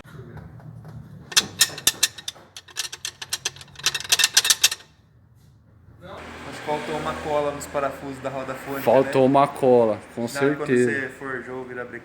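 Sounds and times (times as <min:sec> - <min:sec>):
mechanical clicking and rattling: 0:01.3 - 0:04.9.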